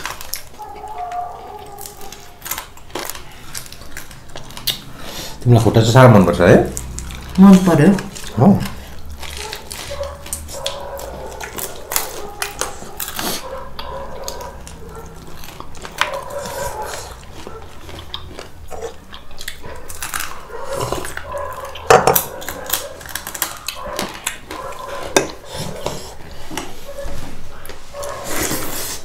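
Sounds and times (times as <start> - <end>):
dishes and cutlery clinking: 21.8 - 22.3, 24.9 - 26.8.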